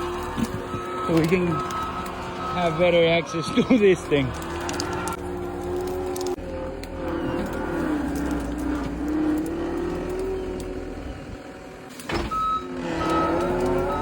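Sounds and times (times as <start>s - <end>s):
reversing alarm beeping: 0.0s - 5.2s, 12.2s - 14.0s
skid steer engine revving: 0.0s - 14.0s.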